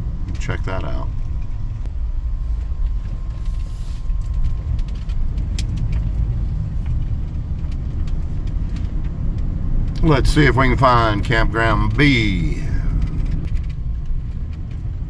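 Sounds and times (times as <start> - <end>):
vehicle engine and road rumble: 0.0 - 15.0
light clicks and rattles: 2.5 - 10.1, 12.8 - 15.0.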